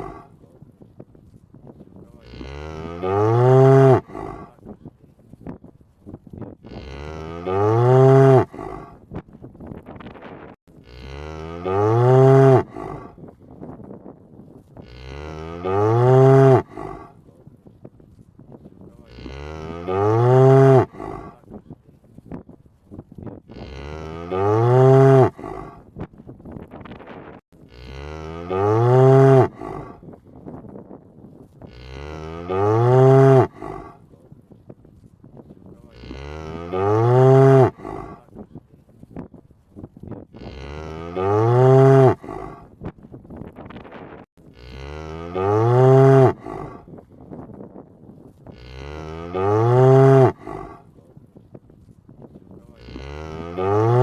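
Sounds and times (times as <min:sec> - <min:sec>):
cow mooing: 0:00.0 - 0:00.4, 0:02.1 - 0:04.6, 0:06.6 - 0:09.0, 0:10.8 - 0:13.2, 0:14.8 - 0:17.1, 0:19.0 - 0:21.4, 0:23.5 - 0:25.8, 0:27.7 - 0:30.0, 0:31.7 - 0:34.0, 0:35.8 - 0:38.3, 0:40.4 - 0:42.7, 0:44.5 - 0:46.9, 0:48.5 - 0:50.9, 0:52.7 - 0:54.0.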